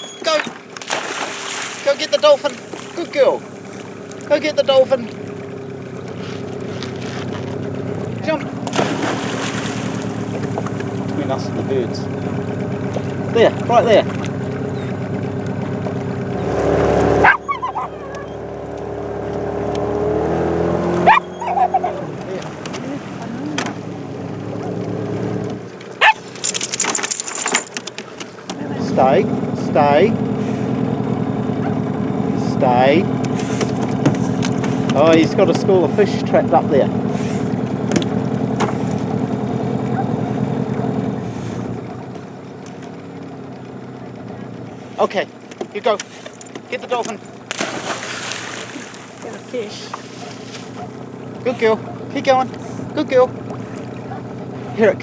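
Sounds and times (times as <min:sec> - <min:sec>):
whining calls: 0:00.0 - 0:00.5, 0:14.1 - 0:15.2, 0:16.3 - 0:18.6, 0:20.9 - 0:22.2, 0:47.2 - 0:52.8
boat motor running: 0:00.0 - 0:55.0.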